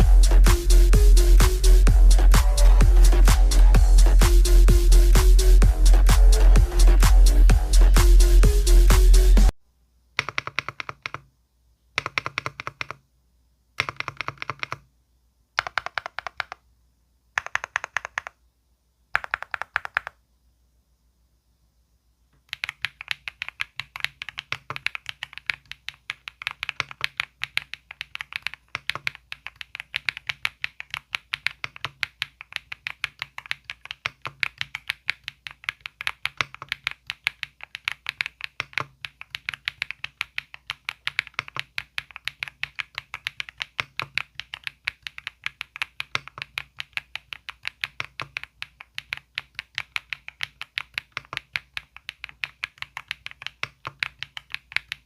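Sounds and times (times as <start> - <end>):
mechanical keyboard typing: 10.2 - 11.3, 12.0 - 13.0, 13.8 - 14.9, 15.6 - 16.6, 17.4 - 18.4, 19.1 - 20.2, 22.4 - 55.0.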